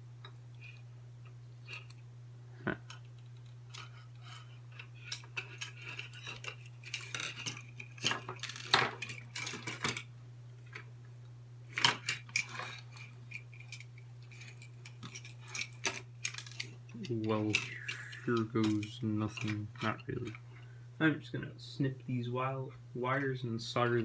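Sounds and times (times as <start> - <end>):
plastic parts clicking and cracking: 2.9 - 10.9, 11.7 - 20.4.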